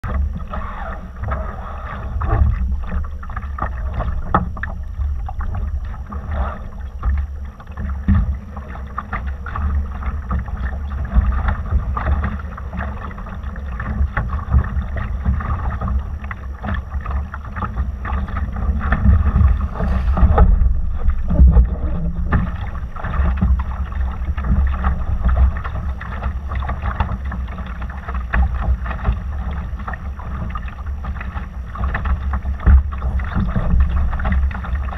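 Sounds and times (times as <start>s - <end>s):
water splashing against hull: 0.0s - 34.9s
wind buffeting microphone: 17.6s - 27.3s.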